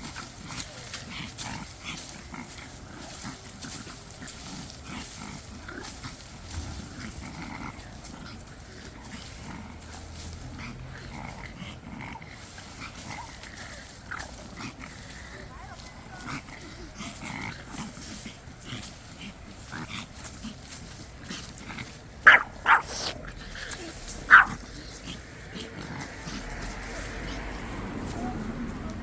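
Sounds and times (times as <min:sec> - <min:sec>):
small dog: 0:00.0 - 0:27.4.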